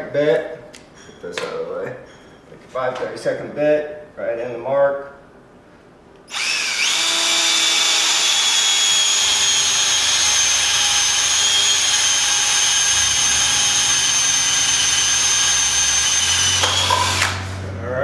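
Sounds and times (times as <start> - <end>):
power drill whining: 6.3 - 17.6.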